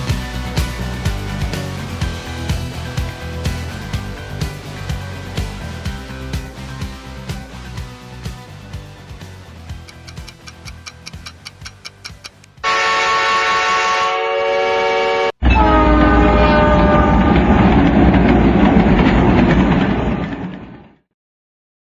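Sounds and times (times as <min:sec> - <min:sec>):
train rumbling past: 0:00.0 - 0:10.2, 0:15.4 - 0:21.0
music: 0:00.0 - 0:12.7
train horn: 0:12.6 - 0:17.7.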